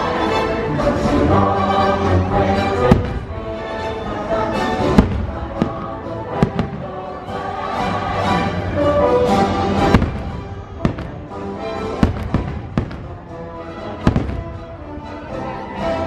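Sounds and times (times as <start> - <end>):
orchestral music over loudspeakers: 0.0 - 16.0
fireworks bangs: 2.8 - 3.4, 4.8 - 7.1, 9.8 - 14.9.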